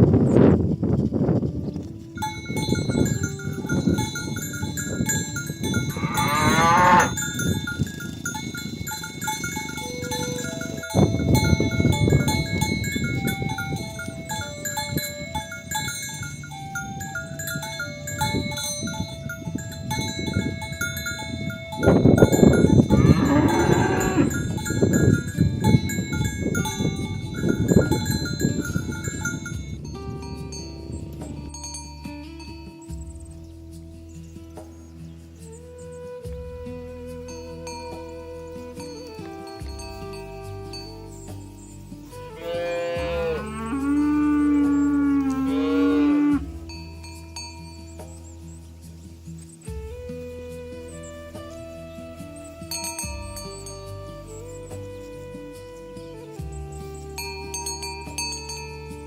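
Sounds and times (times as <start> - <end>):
cowbells clanking: 1.8 - 33.5, 37.3 - 49.6, 52.6 - 55.4, 57.1 - 59.0
oxen mooing: 5.9 - 7.2, 22.9 - 24.4, 42.4 - 46.5.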